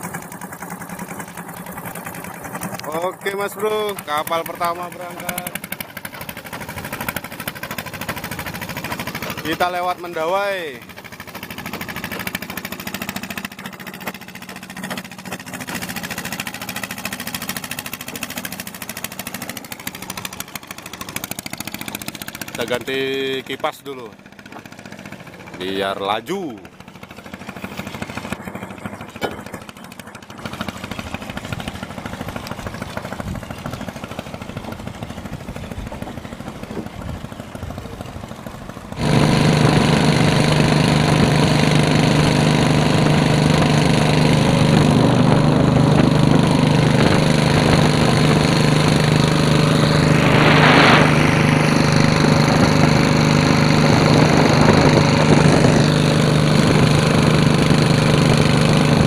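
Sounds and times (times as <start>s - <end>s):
boat engine running: 0.0s - 59.0s
brief rushing noise: 50.0s - 52.3s.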